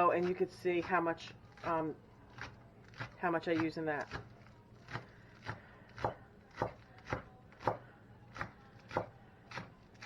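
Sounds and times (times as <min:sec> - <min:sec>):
knife chopping on cutting board: 0:04.9 - 0:07.8, 0:08.4 - 0:09.8.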